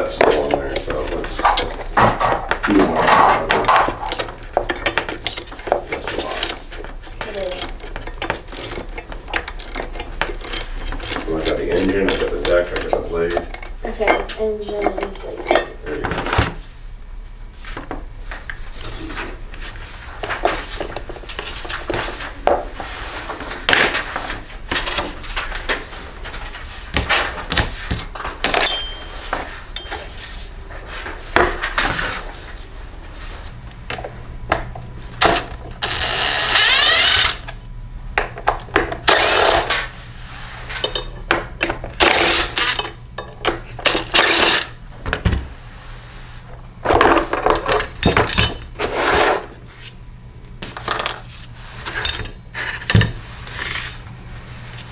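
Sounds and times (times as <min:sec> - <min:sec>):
metal parts clanking and rattling: 0:00.0 - 0:16.5, 0:23.7 - 0:32.1, 0:35.1 - 0:37.6, 0:38.5 - 0:45.6, 0:46.9 - 0:49.5, 0:50.6 - 0:54.9
power tool running: 0:35.2 - 0:37.6, 0:39.0 - 0:40.2.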